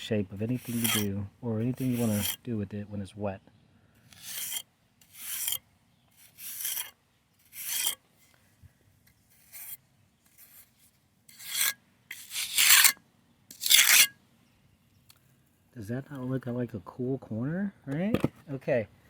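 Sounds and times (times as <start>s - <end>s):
tool scraping wet concrete: 0.0s - 2.5s, 4.1s - 8.0s, 9.3s - 14.2s.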